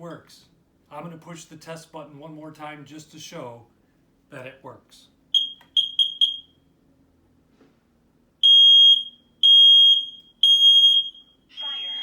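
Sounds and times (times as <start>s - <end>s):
smoke detector beeping: 5.4s - 6.6s, 8.4s - 12.0s.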